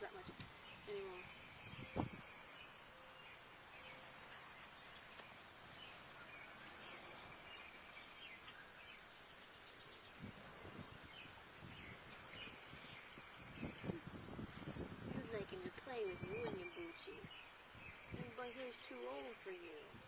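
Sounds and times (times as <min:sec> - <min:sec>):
distant bird chirps: 0:00.6 - 0:10.4, 0:15.3 - 0:20.0.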